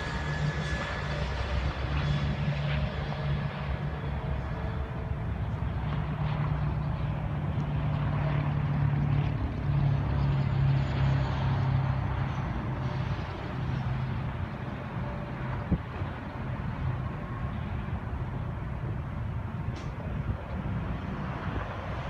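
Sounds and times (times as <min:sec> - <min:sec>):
diesel locomotive engine drone: 0:00.0 - 0:22.0.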